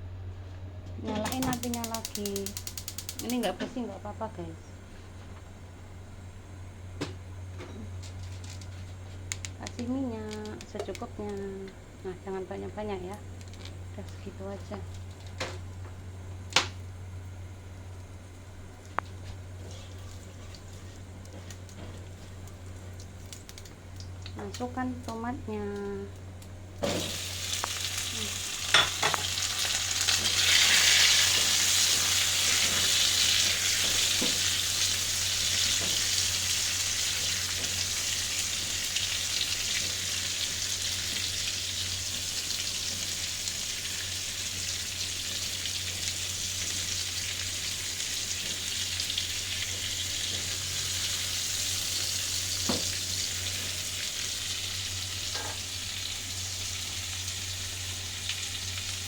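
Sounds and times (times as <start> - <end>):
tomatoes sizzling in oil: 16.6 - 59.0.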